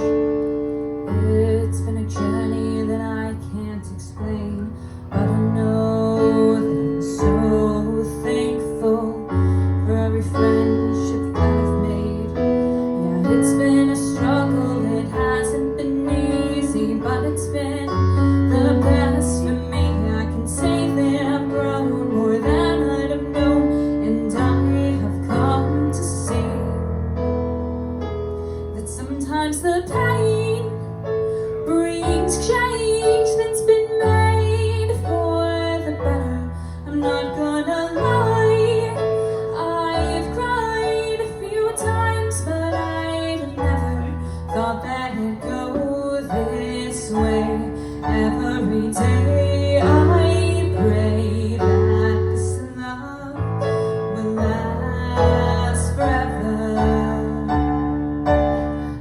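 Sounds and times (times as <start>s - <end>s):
slow piano chords: 0.0s - 59.0s
person singing: 31.9s - 59.0s.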